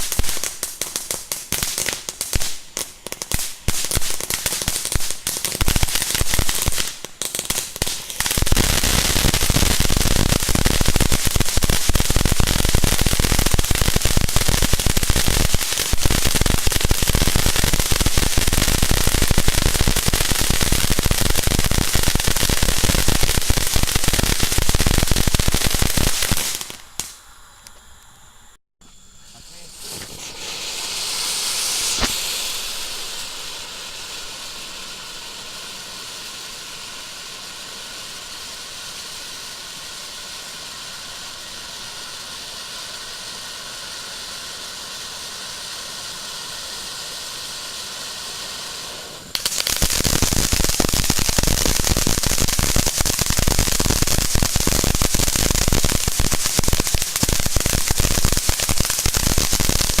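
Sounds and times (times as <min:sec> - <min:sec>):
firework crackling: 0:00.0 - 0:28.2, 0:28.8 - 1:00.0
ground firework hissing: 0:00.0 - 1:00.0
firework pop: 0:31.8 - 0:32.7.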